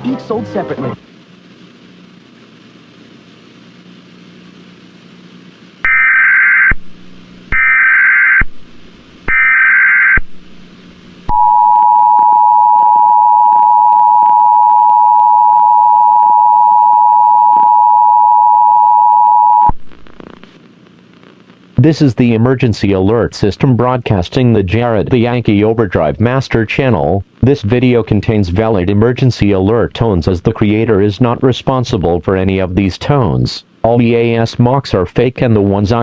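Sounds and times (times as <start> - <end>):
faint hiss: 19.8 - 24.0.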